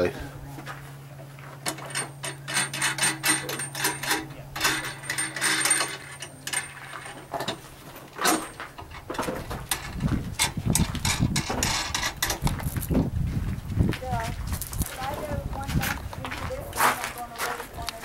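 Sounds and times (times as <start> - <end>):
steady low hum: 0.0 - 18.0
heavy low rumbling: 8.7 - 18.0.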